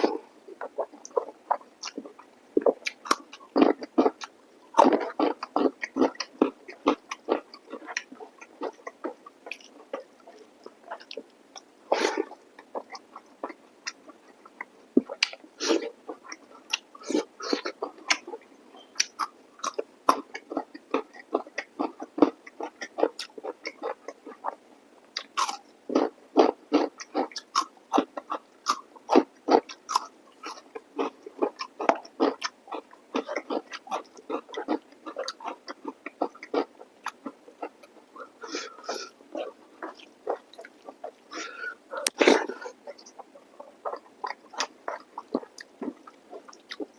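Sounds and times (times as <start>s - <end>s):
chewing and lip-smacking: 0.0s - 18.4s, 19.0s - 46.9s
slurping mouth sounds: 26.4s - 46.9s.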